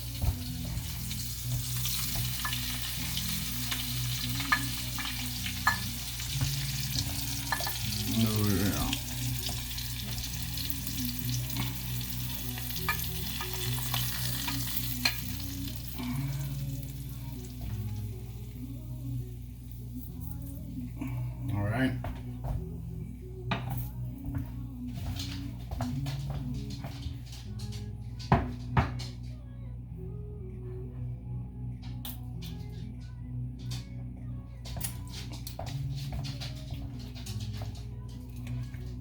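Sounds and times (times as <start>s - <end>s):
food sizzling in frying pan: 0.0s - 18.6s.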